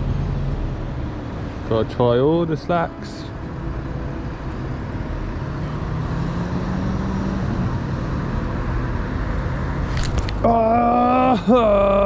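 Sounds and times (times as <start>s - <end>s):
passing vehicle engine hum: 0.0s - 12.0s.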